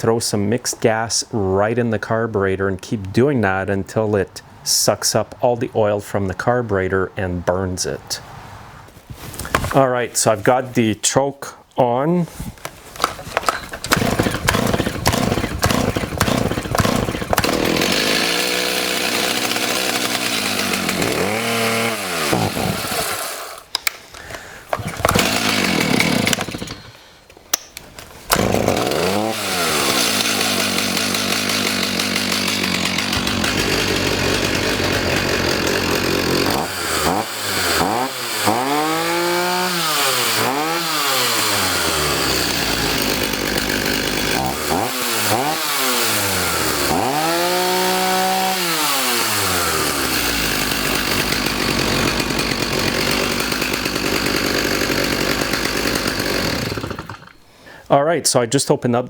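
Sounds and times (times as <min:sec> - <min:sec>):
chainsaw engine revving: 0:13.0 - 0:27.0, 0:28.3 - 0:57.4.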